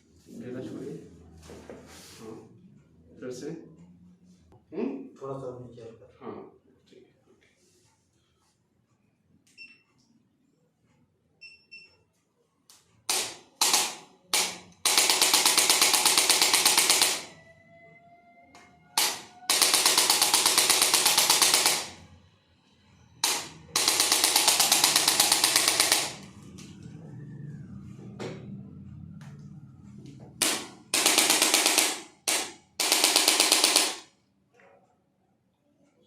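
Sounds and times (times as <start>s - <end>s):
percussion gun rapid impacts: 13.1s - 17.3s, 19.0s - 22.0s, 23.2s - 26.2s, 30.4s - 34.1s.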